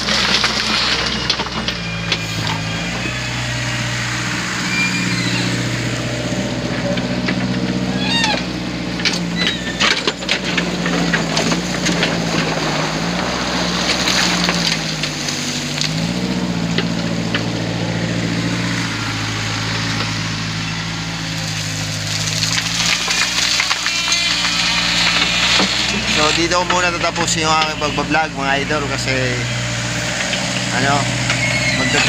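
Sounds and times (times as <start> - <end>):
diesel engine under load: 0.0 - 32.0
bucket knocking and scraping: 9.1 - 17.6.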